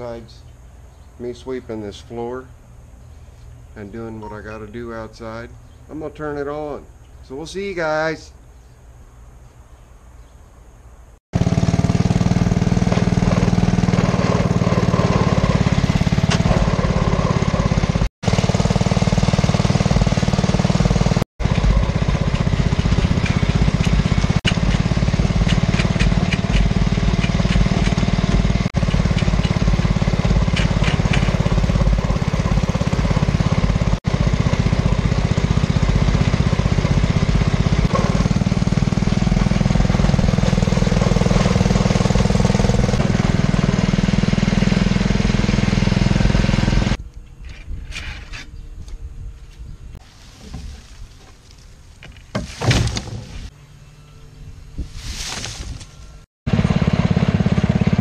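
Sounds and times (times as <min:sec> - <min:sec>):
small engine running: 0:11.4 - 0:47.0, 0:56.5 - 0:58.0.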